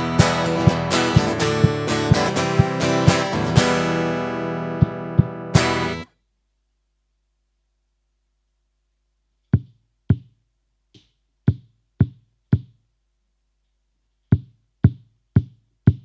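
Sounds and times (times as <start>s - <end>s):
stomp box beating a pulse: 0.0s - 6.0s, 14.3s - 16.0s
acoustic guitar strumming: 0.0s - 6.1s.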